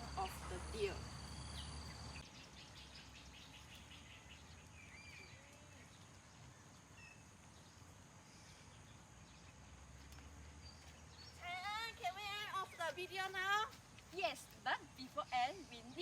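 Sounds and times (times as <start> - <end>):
bird chirps: 0.0 - 6.0.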